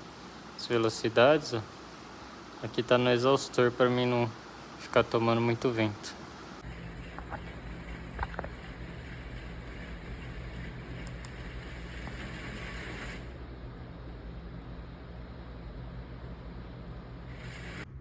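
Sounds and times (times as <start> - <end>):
air hiss: 0.0 - 9.2, 10.5 - 13.5, 17.1 - 18.0
ceiling fan motor hum: 0.0 - 18.0.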